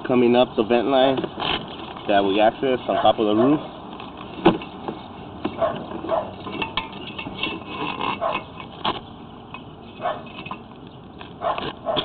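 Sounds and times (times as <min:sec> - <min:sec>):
cable scraping inside pipe: 0:04.2 - 0:09.0.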